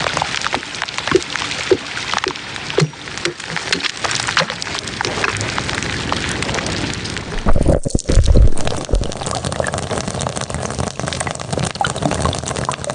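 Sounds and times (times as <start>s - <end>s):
dense crackling clicks: 0.0s - 12.9s
heavy low thumps: 7.3s - 9.3s.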